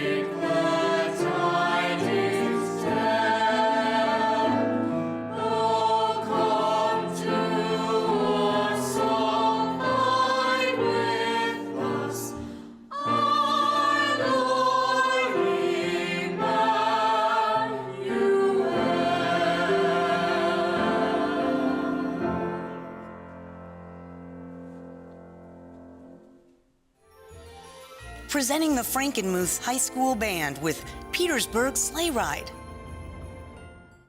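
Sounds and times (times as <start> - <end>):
choir singing: 0.0 - 23.1.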